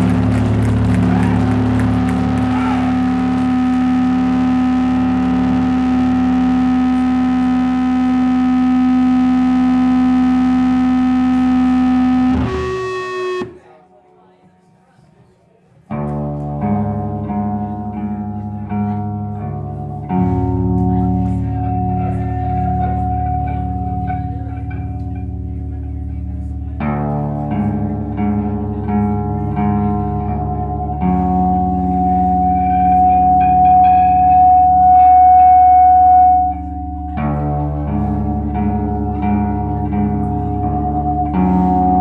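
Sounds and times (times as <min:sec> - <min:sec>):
bass guitar: 0:00.0 - 0:13.7, 0:15.9 - 0:42.0
electric guitar chords: 0:00.0 - 0:13.7, 0:16.0 - 0:42.0.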